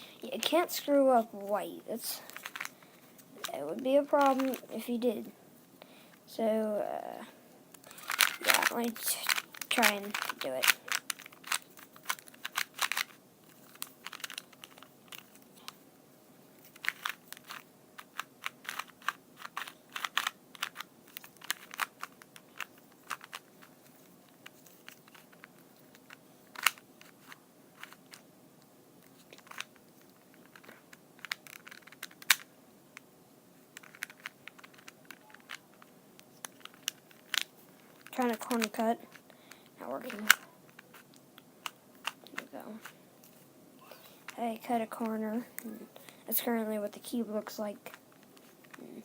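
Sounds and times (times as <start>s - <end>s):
puzzle cube plastic clicks: 2.3s - 4.7s, 7.7s - 15.8s, 16.6s - 28.3s, 29.0s - 33.1s, 33.7s - 43.4s
sharp plastic clacks: 2.3s - 4.7s, 7.7s - 15.8s, 16.6s - 28.2s, 29.0s - 33.1s, 33.8s - 43.4s.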